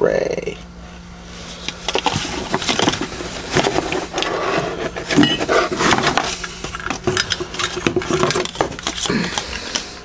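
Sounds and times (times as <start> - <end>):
object handling knocks and scraping: 1.5 - 9.4.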